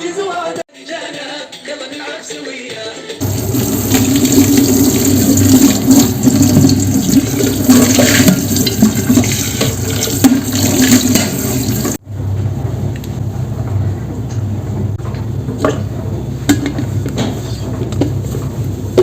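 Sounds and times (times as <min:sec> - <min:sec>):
water running from tap into sink: 0:03.2 - 0:12.0.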